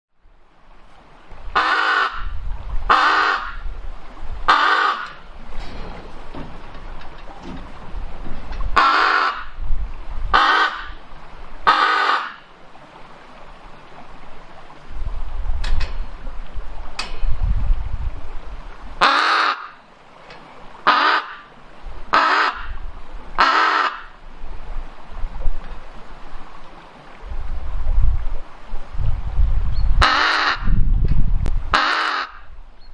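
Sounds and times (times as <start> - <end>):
low wind rumble: 0.1 - 11.8, 12.4 - 32.9
raven cawing: 1.6 - 2.3, 2.9 - 3.6, 4.5 - 5.2, 8.8 - 9.6, 10.3 - 11.0, 11.6 - 12.4, 19.0 - 19.8, 20.8 - 21.5, 22.1 - 22.8, 23.4 - 24.2, 30.0 - 30.7, 31.7 - 32.5.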